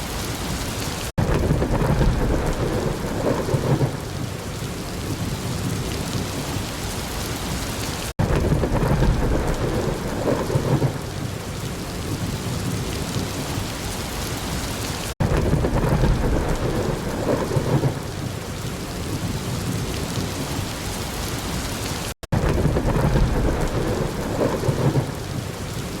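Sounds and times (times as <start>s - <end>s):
heavy rain: 0.0s - 26.0s
rumbling thunder: 1.2s - 6.7s, 8.2s - 13.8s, 15.2s - 20.7s, 22.3s - 26.0s.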